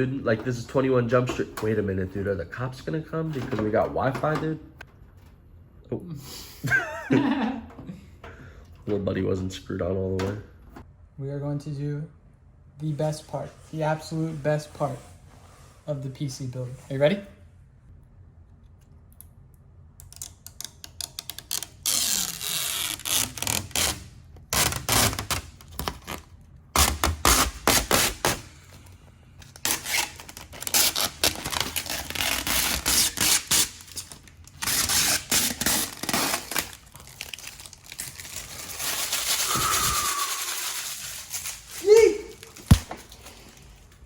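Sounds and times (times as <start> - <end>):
plastic film peeling: 20.2 - 28.5, 29.4 - 44.0.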